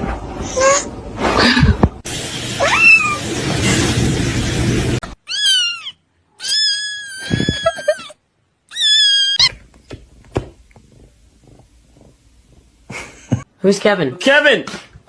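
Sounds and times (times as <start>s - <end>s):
cat meowing: 2.6s - 3.2s, 5.3s - 8.1s, 8.7s - 9.5s.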